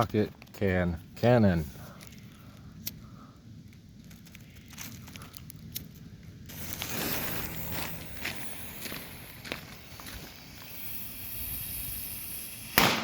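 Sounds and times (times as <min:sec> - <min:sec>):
firework fuse hissing and crackling: 0:00.0 - 0:13.0.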